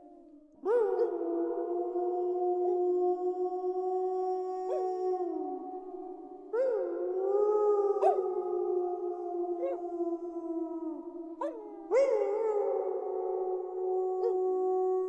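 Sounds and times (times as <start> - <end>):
wolves howling in chorus: 0.6 - 15.0.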